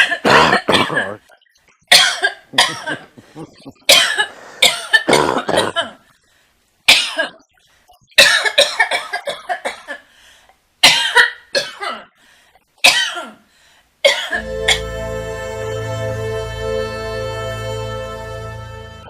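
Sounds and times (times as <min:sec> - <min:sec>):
person coughing harshly: 0:00.0 - 0:01.2, 0:01.9 - 0:03.2, 0:03.8 - 0:06.0, 0:06.9 - 0:07.4, 0:08.2 - 0:10.0, 0:10.8 - 0:12.1, 0:12.8 - 0:13.4, 0:14.1 - 0:14.4.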